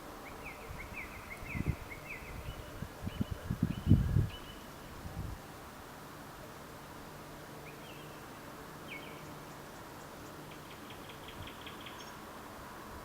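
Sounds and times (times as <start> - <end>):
small birds chirping: 7.6 - 12.3.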